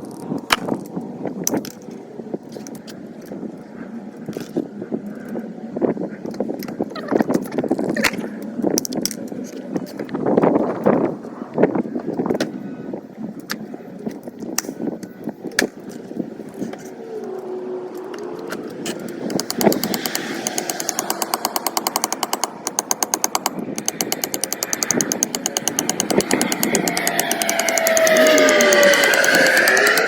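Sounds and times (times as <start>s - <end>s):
tool tapping on metal panel: 19.0s - 30.0s.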